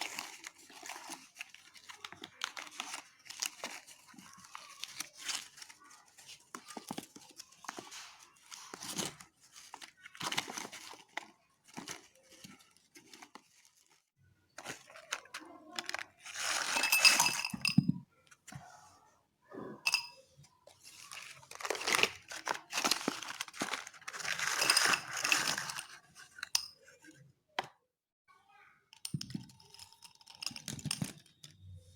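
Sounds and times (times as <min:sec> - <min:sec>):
paper packet crinkling and tearing: 0:00.0 - 0:14.0, 0:14.6 - 0:17.3, 0:20.8 - 0:26.1.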